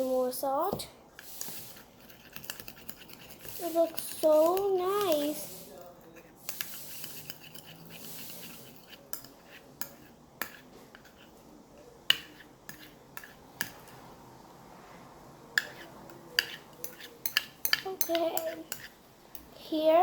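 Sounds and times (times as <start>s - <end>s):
spoon tapping against a bowl: 15.6s - 19.5s.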